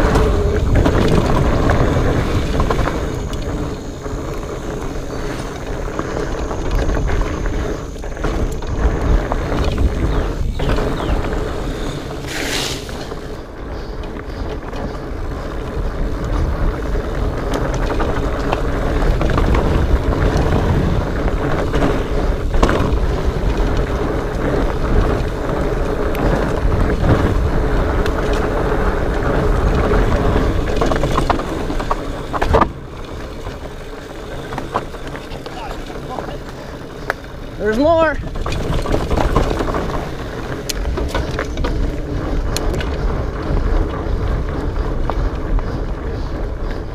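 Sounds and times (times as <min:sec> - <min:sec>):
bike rattling over rocks: 0:00.0 - 0:46.9
fat bike tyres rumbling: 0:00.0 - 0:46.9
wind on microphone: 0:00.0 - 0:46.9
brief hiss: 0:12.3 - 0:13.1.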